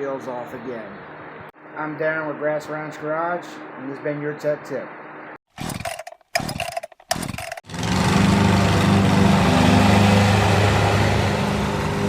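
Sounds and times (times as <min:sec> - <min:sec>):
lawn mower engine running: 0:05.5 - 0:12.0.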